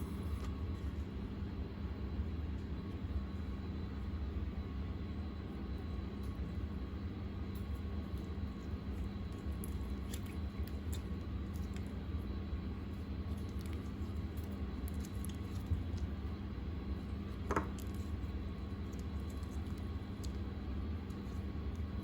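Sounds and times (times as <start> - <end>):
slime squelching in hands: 8.8 - 22.0.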